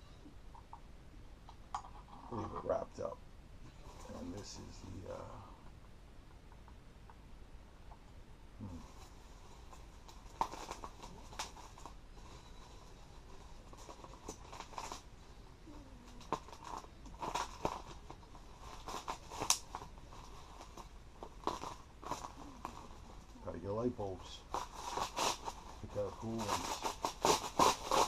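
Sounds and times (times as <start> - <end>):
packaging rustling and crinkling: 8.6 - 28.0.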